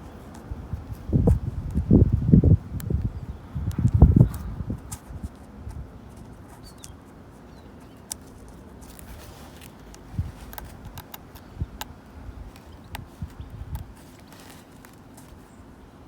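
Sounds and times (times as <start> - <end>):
wind rumble on microphone: 0.0 - 6.8, 10.0 - 14.1.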